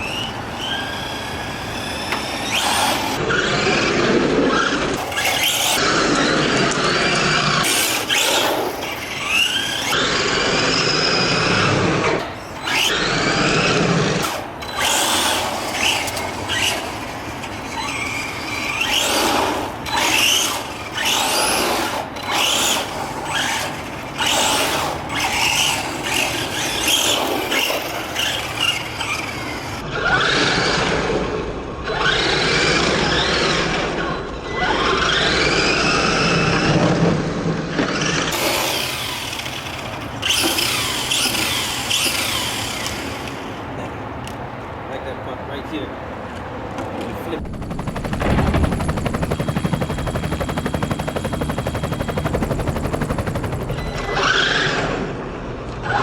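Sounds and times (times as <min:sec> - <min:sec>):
toy truck electric motor whining: 0:00.0 - 0:31.0, 0:31.9 - 0:36.7, 0:37.7 - 0:43.6.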